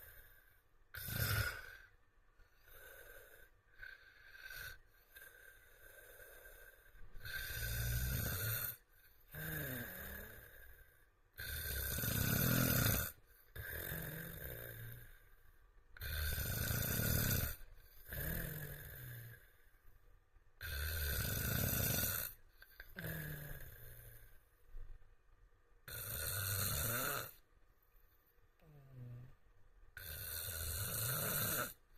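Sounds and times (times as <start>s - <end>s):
quiet breath: 0.0s - 21.4s, 22.0s - 25.2s, 26.9s - 31.9s
man snoring: 0.9s - 1.9s, 2.5s - 15.2s, 16.0s - 19.5s, 20.6s - 24.3s, 25.9s - 27.4s, 30.0s - 31.9s.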